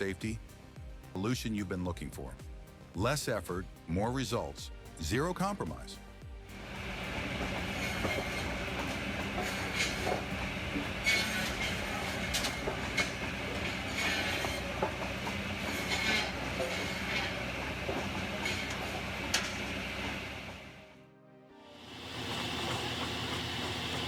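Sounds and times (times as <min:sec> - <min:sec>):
machinery humming: 0:06.5 - 0:20.9, 0:21.8 - 0:24.0
metallic clanks and knocks: 0:06.8 - 0:19.7.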